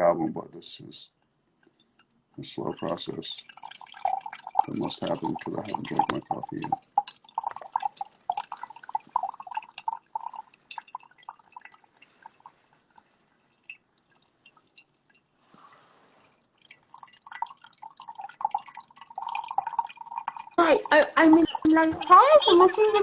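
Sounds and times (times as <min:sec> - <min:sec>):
coffee dripping plinks: 0:01.6 - 0:23.0
soft hiss: 0:11.9 - 0:16.6.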